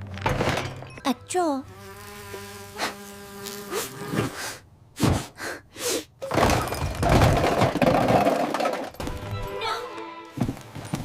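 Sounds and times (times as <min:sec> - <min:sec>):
loud crashing clatter: 0:06.2 - 0:09.0.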